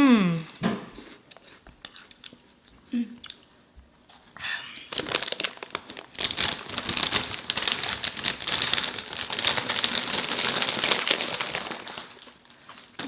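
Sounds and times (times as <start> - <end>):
plastic packaging crinkling: 4.9 - 13.0.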